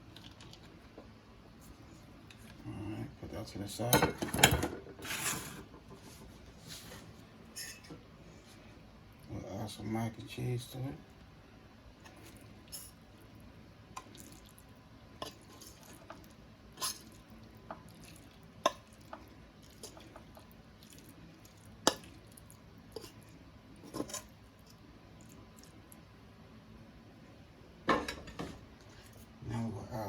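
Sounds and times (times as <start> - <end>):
wet food squishing: 14.0 - 23.4.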